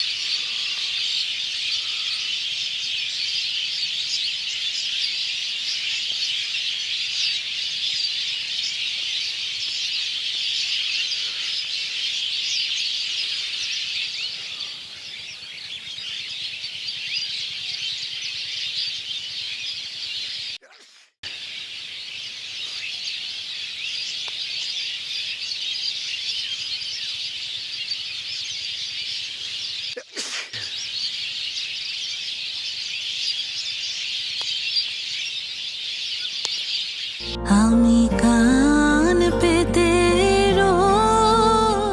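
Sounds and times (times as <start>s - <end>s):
sparrows chirping: 0.0s - 20.5s.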